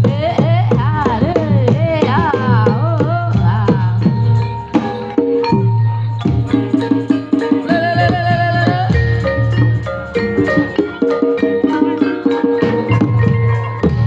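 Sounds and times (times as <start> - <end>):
rapid hand-drum strokes: 0.0 - 14.0
high sliding melody: 2.1 - 14.0.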